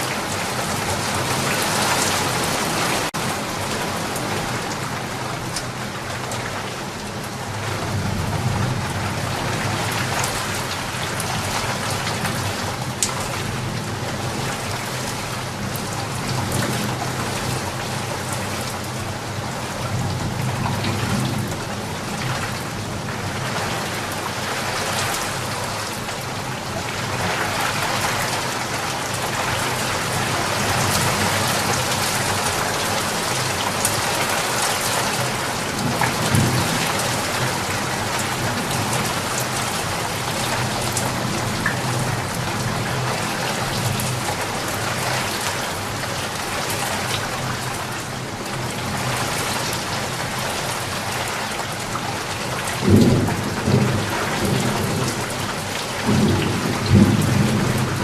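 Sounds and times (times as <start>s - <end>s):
heavy rain pattering: 0.0s - 58.0s
thunder rumbling: 52.8s - 58.0s.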